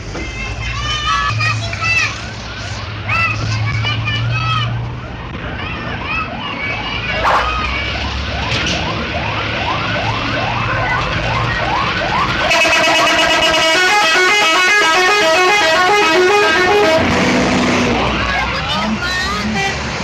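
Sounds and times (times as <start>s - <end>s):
musical bus air horn: 12.5s - 17.8s.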